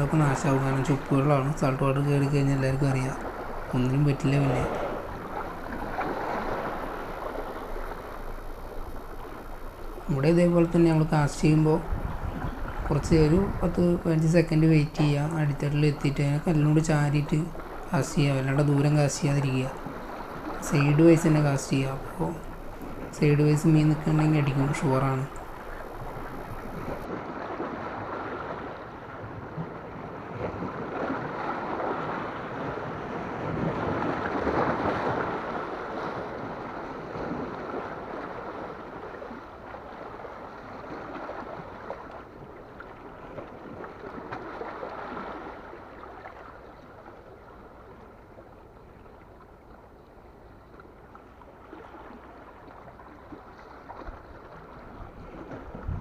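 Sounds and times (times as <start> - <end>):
wind on microphone: 0.0 - 39.4, 54.0 - 56.0
sea waves washing against rocks: 0.0 - 42.3.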